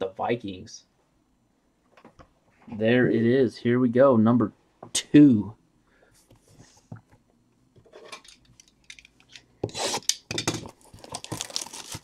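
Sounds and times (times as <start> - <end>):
plastic rustling: 10.6 - 12.0
plastic wrap scraping and ticking: 10.8 - 12.0.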